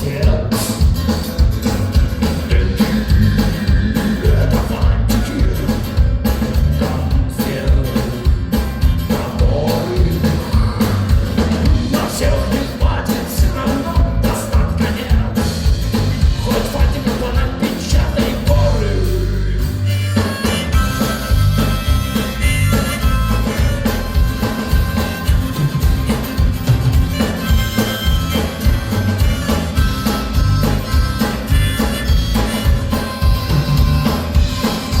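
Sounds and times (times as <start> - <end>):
person singing: 0.0 - 0.9, 2.2 - 25.3
rock band playing live: 0.0 - 35.0.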